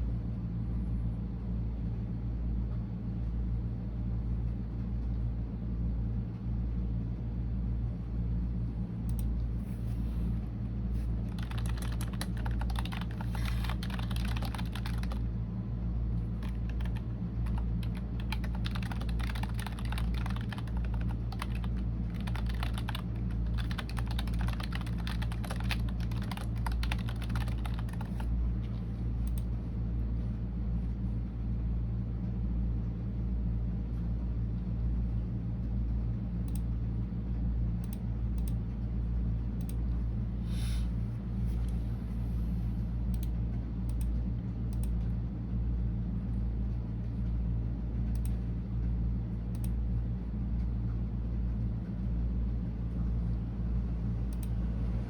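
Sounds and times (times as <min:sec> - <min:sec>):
typing on computer keyboard: 0:11.3 - 0:15.2, 0:16.2 - 0:28.3.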